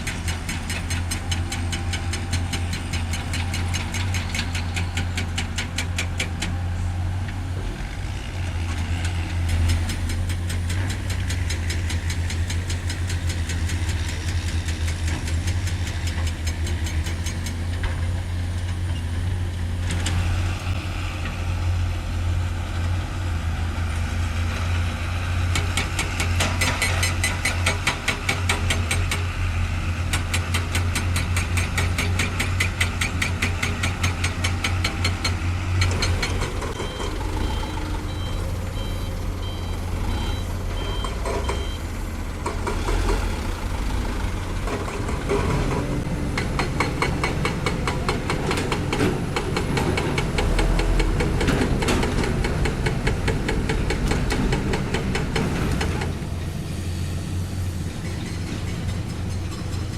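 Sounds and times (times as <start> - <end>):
diesel engine droning: 29.0 - 59.9.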